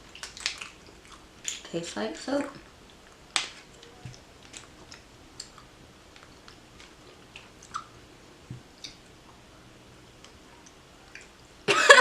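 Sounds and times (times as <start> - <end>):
person chewing gum: 0.0 - 1.6, 3.8 - 8.0.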